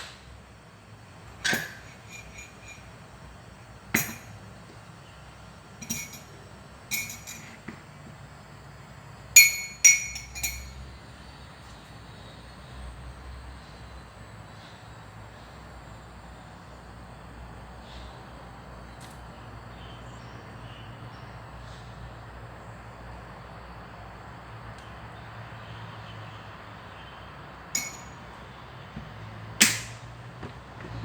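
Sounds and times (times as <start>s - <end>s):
low background hum: 0.0s - 31.0s
crockery clinking: 1.4s - 3.1s, 3.9s - 4.4s, 5.8s - 7.7s, 9.4s - 10.8s, 27.8s - 28.4s.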